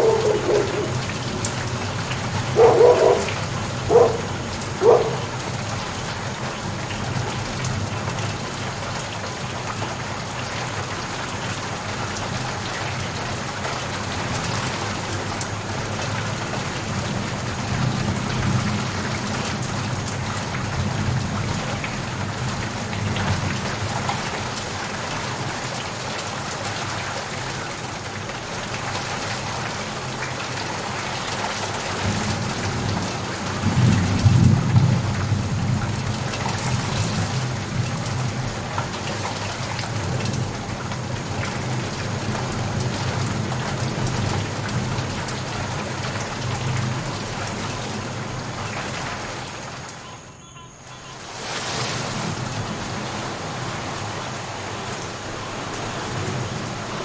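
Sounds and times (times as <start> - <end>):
dog barking: 0.0 - 1.3, 2.4 - 5.6, 14.4 - 15.7
distant thunder rumble: 0.0 - 7.3
heavy rain: 0.0 - 57.0.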